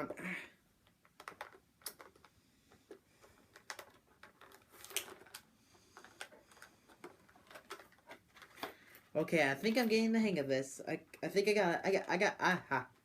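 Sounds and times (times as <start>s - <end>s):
plastic packaging crackling: 3.3s - 10.0s.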